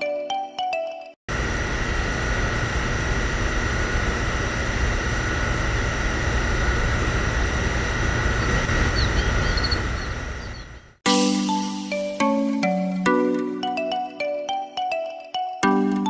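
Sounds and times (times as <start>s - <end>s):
high whine: 1.3s - 11.0s
small motor droning: 1.3s - 11.0s
faint high chirps: 8.4s - 10.8s.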